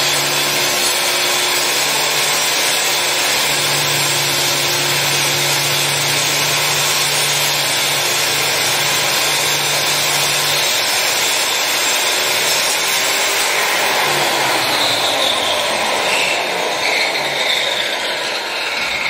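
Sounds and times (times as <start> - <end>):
power tool cutting: 0.0 - 19.0.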